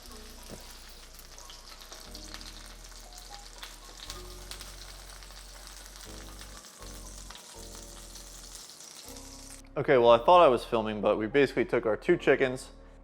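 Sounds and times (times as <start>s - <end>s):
chicken frying in oil: 0.0s - 9.6s
low background music: 0.0s - 13.0s.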